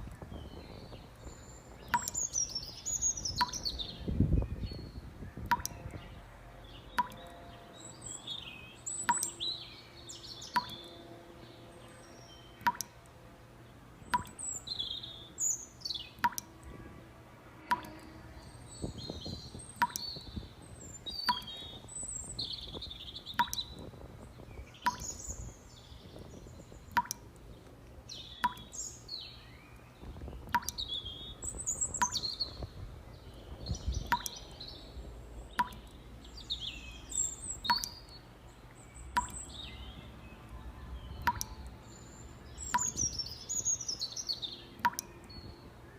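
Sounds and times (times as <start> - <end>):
small birds chirping: 0.0 - 45.9
sharp click or plop: 1.9 - 2.2, 5.4 - 5.8, 7.0 - 7.3, 9.1 - 9.3, 10.6 - 10.8, 12.7 - 12.9, 14.2 - 14.4, 16.2 - 16.5, 17.7 - 18.0, 19.8 - 20.1, 21.3 - 21.5, 23.4 - 23.6, 24.9 - 25.1, 30.6 - 30.8, 34.1 - 34.4, 35.6 - 35.9, 37.7 - 37.9, 39.2 - 39.4, 41.2 - 41.5, 42.8 - 43.0, 44.9 - 45.1.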